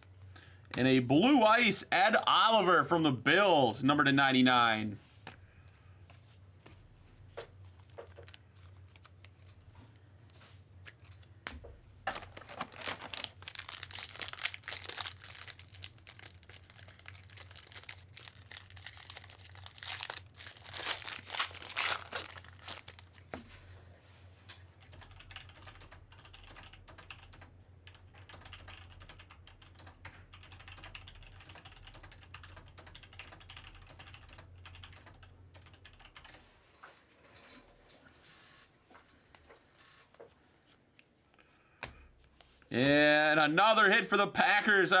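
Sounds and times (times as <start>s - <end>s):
foil wrappers crinkling and tearing: 7.8s - 9.5s, 12.1s - 23.3s.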